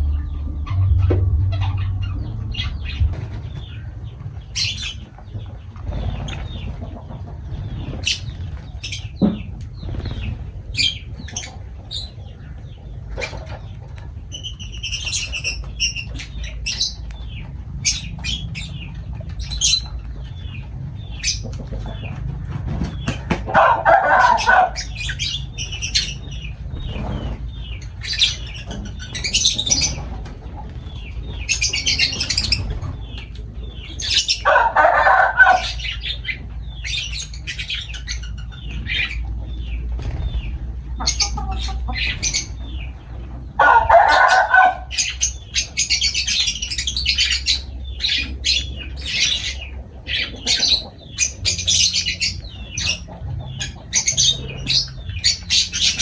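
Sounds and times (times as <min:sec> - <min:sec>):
lovebirds chirping shrilly: 0:24.2 - 0:30.2, 0:30.8 - 0:34.5.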